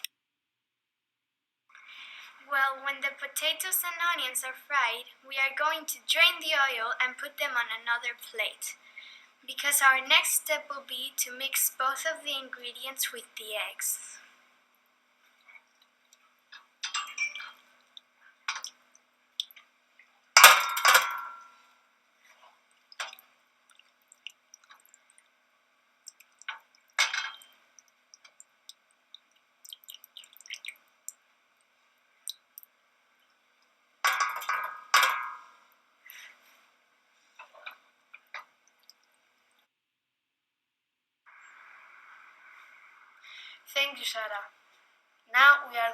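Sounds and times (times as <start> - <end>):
metal utensils clanking on pan: 16.6 - 17.6, 20.4 - 21.5, 27.0 - 27.5, 34.1 - 35.5
ringing clangs: 16.8 - 17.6, 20.4 - 21.6.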